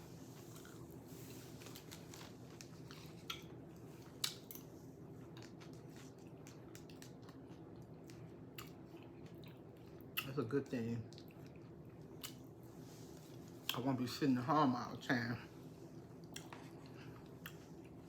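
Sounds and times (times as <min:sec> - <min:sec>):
person chewing: 0:00.4 - 0:01.4, 0:02.2 - 0:10.4, 0:11.0 - 0:13.9, 0:16.0 - 0:18.0
wet mouth clicks: 0:10.1 - 0:10.4, 0:12.2 - 0:12.4, 0:16.2 - 0:16.6.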